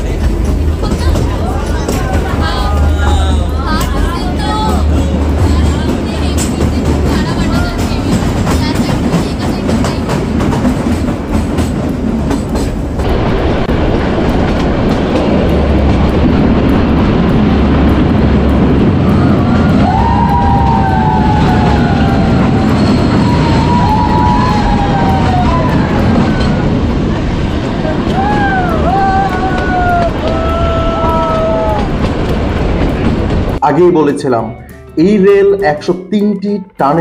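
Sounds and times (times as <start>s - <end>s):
train wheels clattering on rails: 0.0s - 33.6s
high train squeals: 18.8s - 33.3s.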